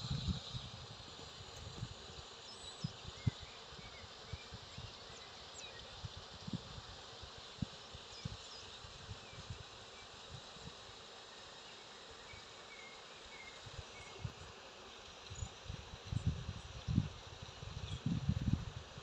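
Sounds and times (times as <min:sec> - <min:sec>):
steady hiss: 0:00.0 - 0:19.0.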